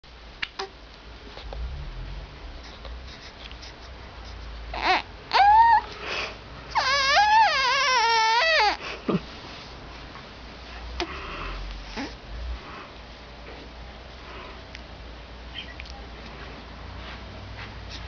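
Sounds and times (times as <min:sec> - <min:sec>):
baby squealing and crying: 0:04.7 - 0:05.9, 0:06.7 - 0:08.8.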